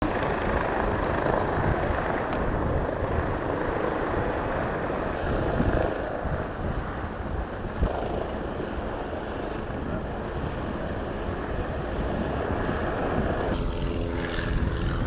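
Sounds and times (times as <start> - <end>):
aircraft rotors whirring: 0.0 - 15.0.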